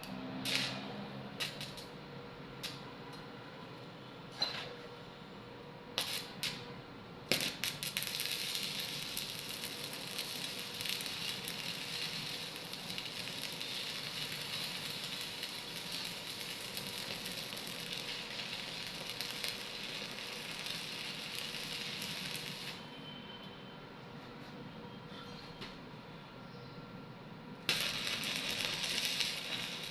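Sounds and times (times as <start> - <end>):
electric arc welding crackle: 0.0 - 2.0, 6.0 - 6.6, 7.3 - 22.9, 27.7 - 29.9.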